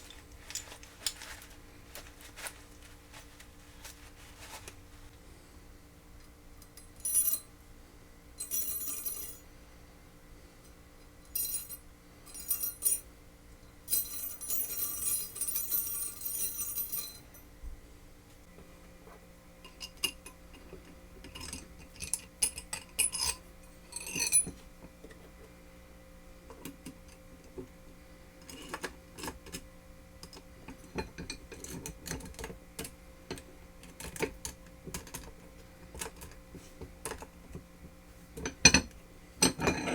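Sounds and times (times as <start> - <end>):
metal tools clinking and rattling: 0.0 - 2.6, 8.4 - 9.4, 11.3 - 13.1, 13.9 - 17.4, 21.3 - 24.6, 39.4 - 39.9.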